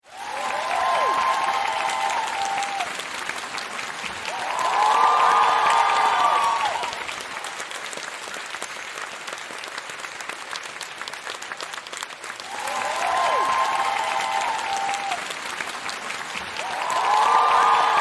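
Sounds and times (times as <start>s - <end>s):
cheering voices: 0.0s - 7.7s, 12.4s - 18.0s
crowd applauding: 0.0s - 18.0s.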